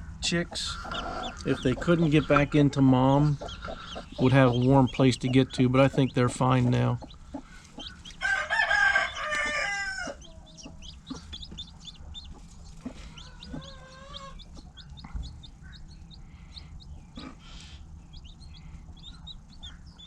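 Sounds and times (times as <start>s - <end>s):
chicks peeping: 0.0s - 20.0s
hen calling: 0.0s - 20.0s
rooster crowing: 8.0s - 10.9s, 13.2s - 14.4s.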